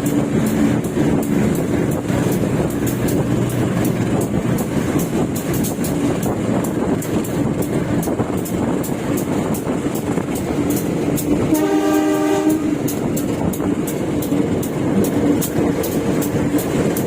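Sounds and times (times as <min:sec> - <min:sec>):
train wheels rumbling on track: 0:00.0 - 0:17.0
train horn: 0:11.4 - 0:13.0.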